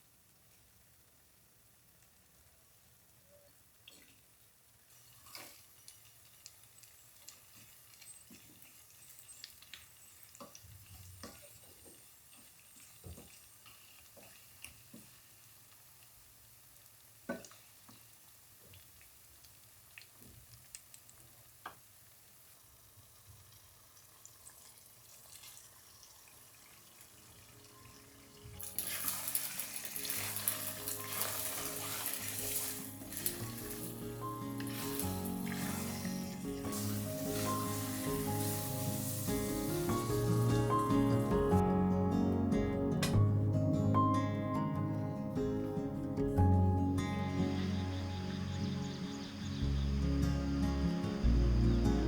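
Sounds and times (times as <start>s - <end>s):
food sizzling in a pan: 0.0s - 41.6s, 46.9s - 51.4s
water running into sink: 26.7s - 41.5s
soft background music: 27.2s - 52.0s
utensil scraping a pan: 28.8s - 34.0s.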